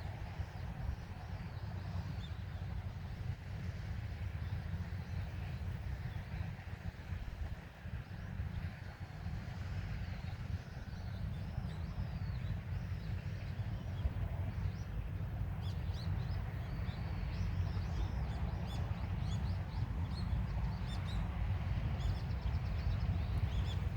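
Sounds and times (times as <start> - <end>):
steady low rumble: 9.2 - 23.9
small birds chirping: 15.6 - 23.9.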